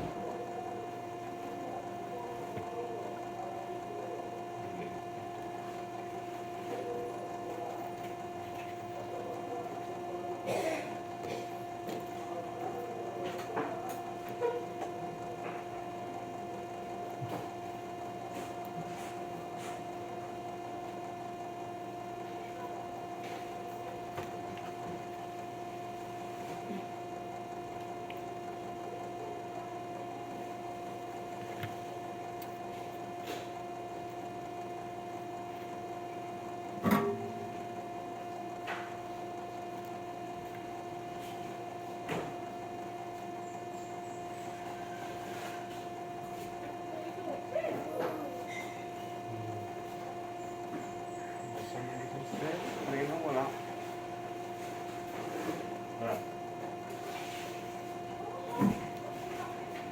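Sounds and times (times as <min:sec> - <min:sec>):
electrical hum: 0:00.0 - 0:59.9.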